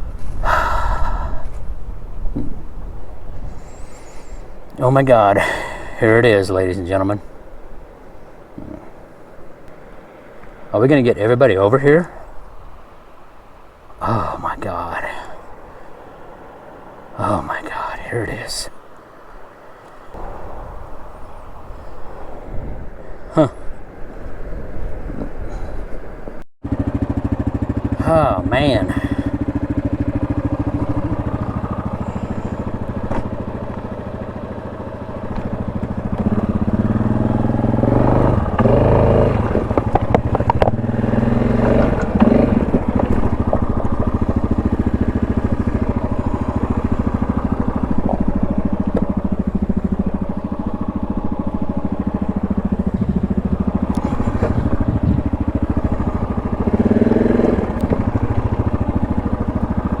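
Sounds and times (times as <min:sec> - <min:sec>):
atv engine revving: 0:00.0 - 0:12.6, 0:13.8 - 0:17.9, 0:20.1 - 0:22.2, 0:26.6 - 1:00.0
knocks over rough ground: 0:01.5 - 0:02.8, 0:32.9 - 0:33.8, 0:39.4 - 0:46.3, 0:52.9 - 0:56.1.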